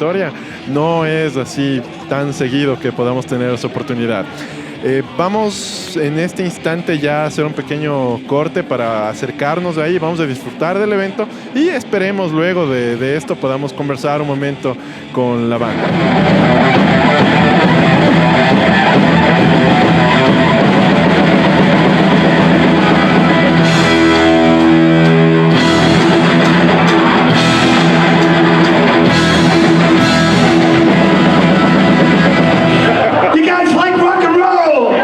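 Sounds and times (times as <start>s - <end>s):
distorted electric guitar riffs: 0.0s - 35.0s
drums: 15.6s - 35.0s.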